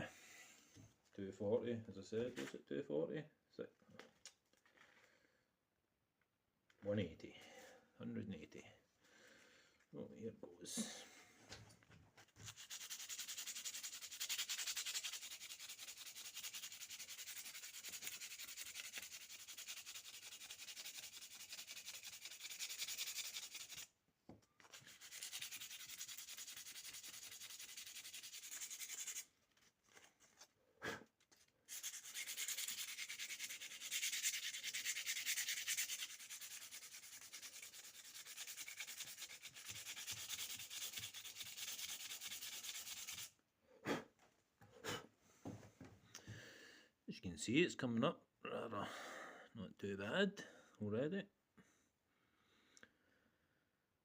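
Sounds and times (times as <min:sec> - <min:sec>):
sandpaper rubbing on metal blade: 0:12.4 - 0:23.9, 0:24.6 - 0:29.3, 0:31.7 - 0:43.4.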